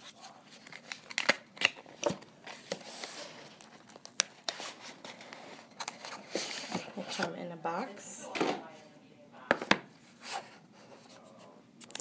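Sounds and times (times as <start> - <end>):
packaging rustling: 0.2 - 7.3
packaging clicks and snaps: 0.6 - 2.2, 3.5 - 4.5.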